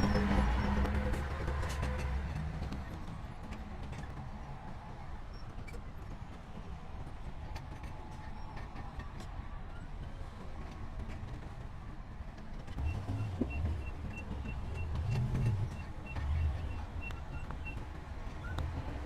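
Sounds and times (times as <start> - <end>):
diesel engine rumbling: 0.0 - 5.2, 12.6 - 19.0.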